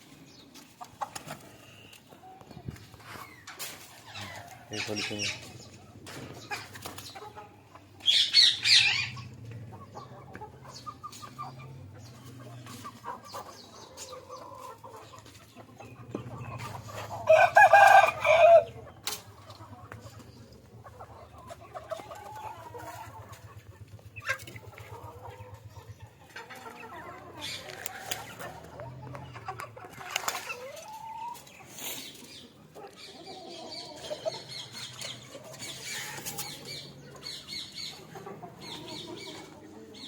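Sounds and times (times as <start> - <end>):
hens clucking: 0.0 - 40.0
rooster crowing: 17.2 - 18.7.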